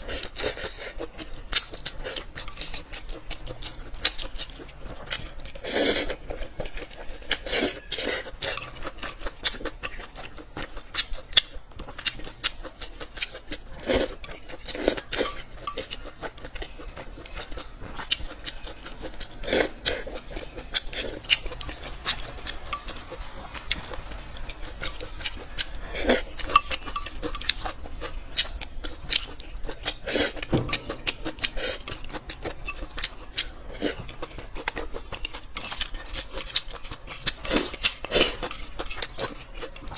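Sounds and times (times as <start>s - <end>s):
chewing and mouth clicks: 0.0s - 39.9s
cutlery clinking on a dish: 7.3s - 9.6s, 14.1s - 16.0s, 26.3s - 27.8s, 30.3s - 33.2s, 35.5s - 39.9s.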